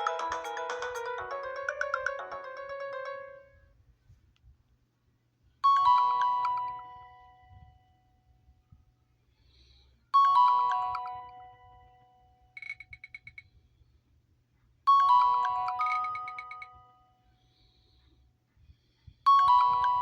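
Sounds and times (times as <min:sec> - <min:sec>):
bright chime ringtone: 0:00.0 - 0:03.6, 0:10.2 - 0:11.6, 0:14.9 - 0:16.9, 0:19.3 - 0:20.0.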